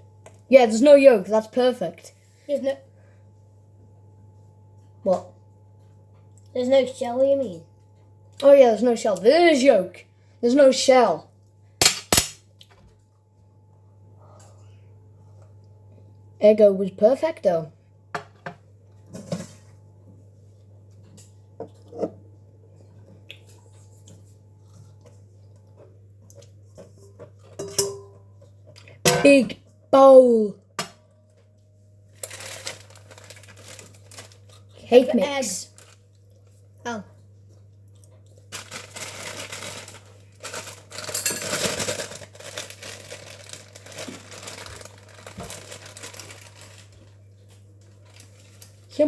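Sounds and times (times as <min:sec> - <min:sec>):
packet crinkling and rustling: 0:32.1 - 0:36.6, 0:38.3 - 0:48.9.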